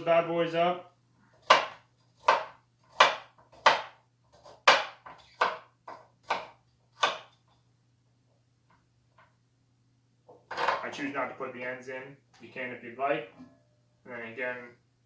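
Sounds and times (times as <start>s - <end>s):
knife chopping on cutting board: 1.4s - 7.4s.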